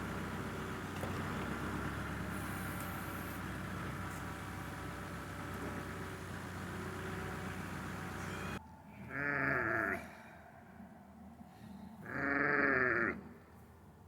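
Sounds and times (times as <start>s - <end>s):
engine running: 0.0s - 8.6s
sheep bleating: 9.0s - 10.0s, 12.0s - 13.2s.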